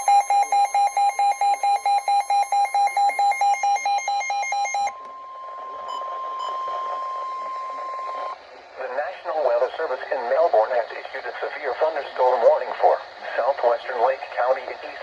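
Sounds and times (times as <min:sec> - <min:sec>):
rapid buzzer beeps: 0:00.0 - 0:08.4
steady alarm tone: 0:00.0 - 0:08.4.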